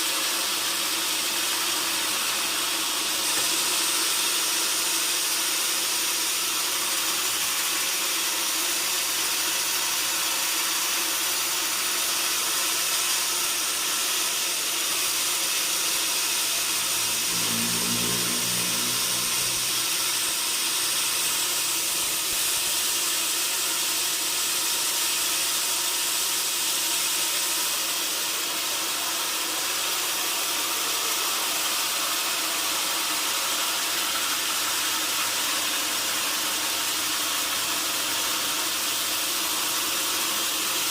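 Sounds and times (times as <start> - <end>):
band saw cutting wood: 14.6 - 25.1
low hum: 16.3 - 22.7.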